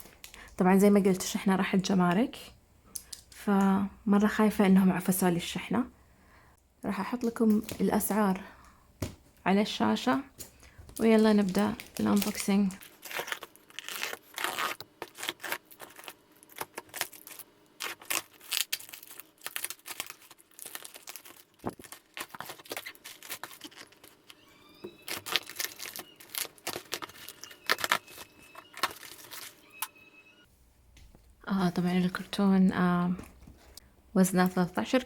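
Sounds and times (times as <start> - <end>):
packing paper and plastic rustling: 10.4 - 29.9
packing tape ripping: 11.8 - 29.5.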